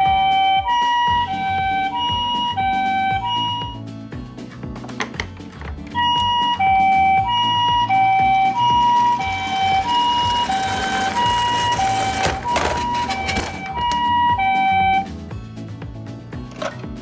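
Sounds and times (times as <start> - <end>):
two-tone ambulance siren: 0.0 - 3.8, 6.0 - 15.1
background music: 0.0 - 17.0.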